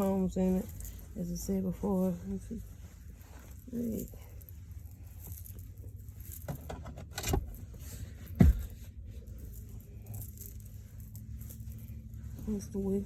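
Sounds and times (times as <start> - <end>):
light knocks and rustles: 5.2 - 13.0.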